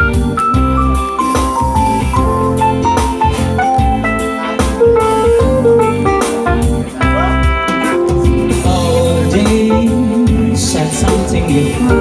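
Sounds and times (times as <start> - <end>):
bass: 0.0 - 12.0
drums: 0.0 - 12.0
guitar melody: 0.0 - 12.0.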